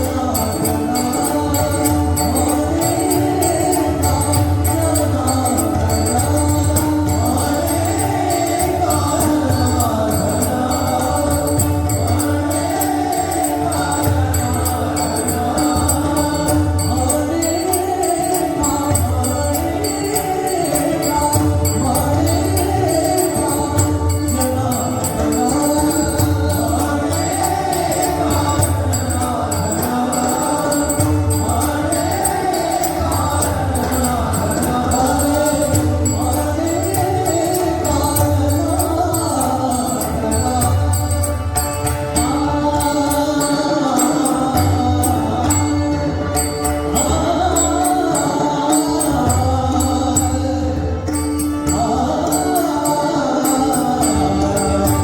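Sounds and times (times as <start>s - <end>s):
devotional singing voices: 0.0s - 55.0s
drum and tabla rhythm: 0.0s - 55.0s.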